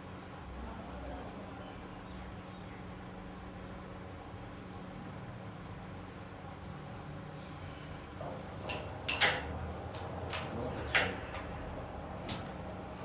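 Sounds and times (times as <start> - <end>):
carrom striker clacking on pieces: 8.6 - 11.6.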